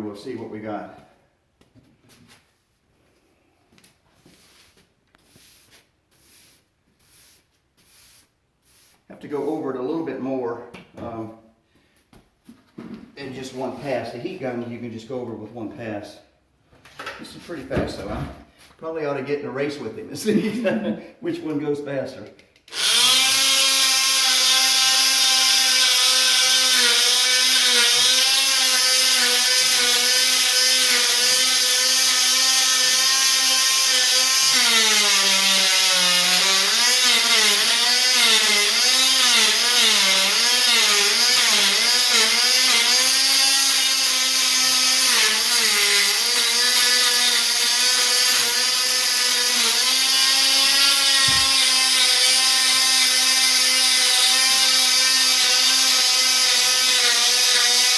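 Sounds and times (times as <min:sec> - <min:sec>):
multi-tool scraping vinyl flooring: 0:04.1 - 0:10.0, 0:22.7 - 0:57.9.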